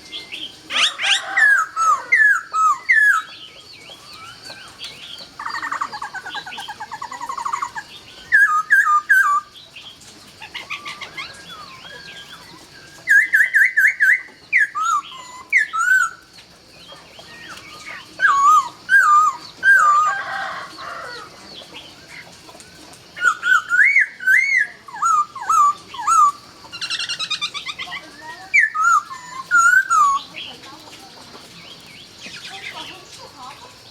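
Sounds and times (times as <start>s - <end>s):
laughingthrush singing whistled phrases: 23.2s - 30.4s.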